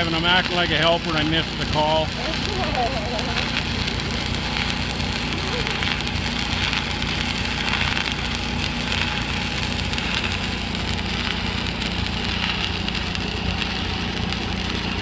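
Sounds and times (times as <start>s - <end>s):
welding arc crackling: 0.0s - 15.0s
welding machine engine drone: 0.0s - 15.0s.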